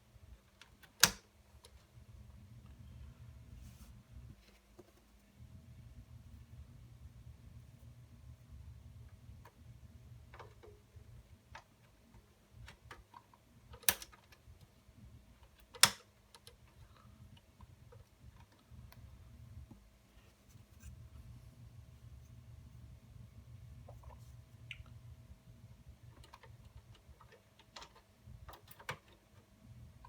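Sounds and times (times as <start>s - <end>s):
computer parts clicking and tapping: 15.5s - 16.7s, 26.0s - 29.5s.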